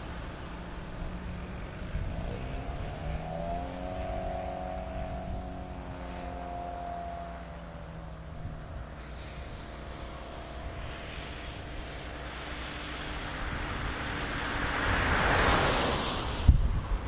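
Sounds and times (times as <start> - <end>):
engine droning past: 0.0 - 17.0.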